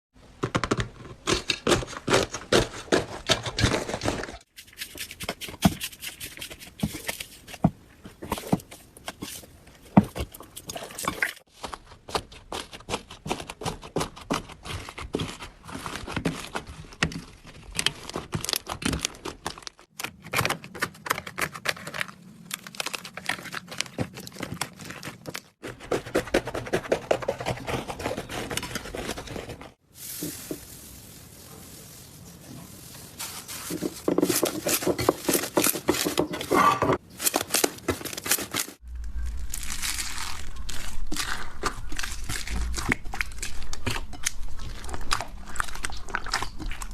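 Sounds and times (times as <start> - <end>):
slime squishing and crackling: 37.0 - 46.9.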